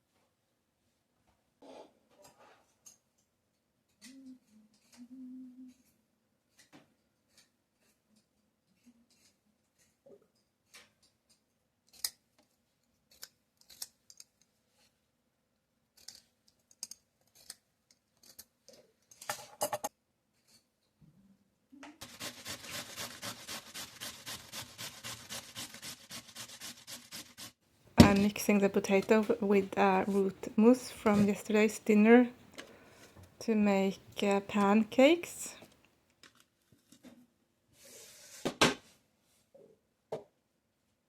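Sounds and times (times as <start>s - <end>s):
utensil scraping potato: 5.7s - 12.2s, 16.0s - 18.5s, 22.0s - 27.6s.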